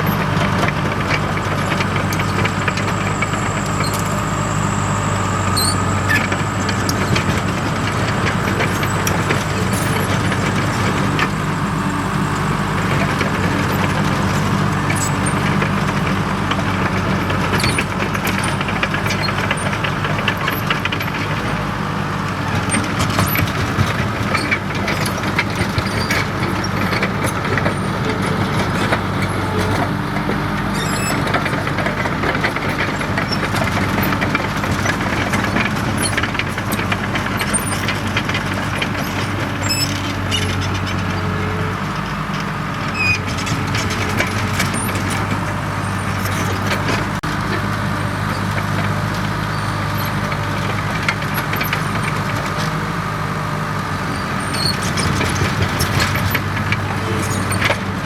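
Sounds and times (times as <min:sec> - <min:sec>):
bulldozer diesel engine running: 0:00.0 - 0:58.0
machine clanks and clicks: 0:54.6 - 0:57.8.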